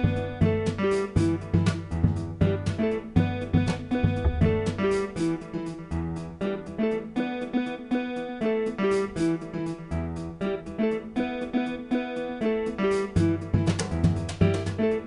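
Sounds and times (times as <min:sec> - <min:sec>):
bass line: 0:04.2 - 0:05.1
plucked guitar: 0:04.2 - 0:05.5.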